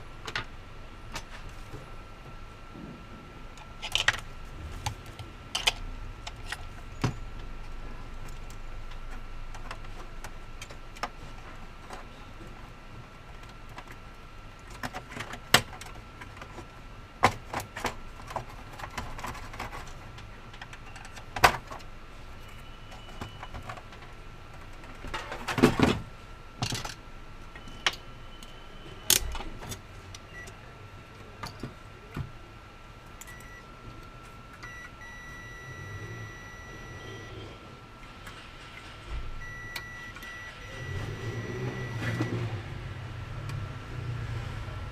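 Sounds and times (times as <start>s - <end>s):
tools and parts clicking: 3.6s - 7.5s, 26.6s - 30.5s
faint steady high tone: 33.2s - 37.6s.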